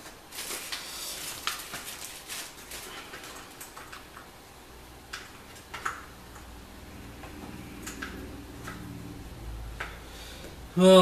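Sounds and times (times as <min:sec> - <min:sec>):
packaging rustling: 0:00.0 - 0:04.3.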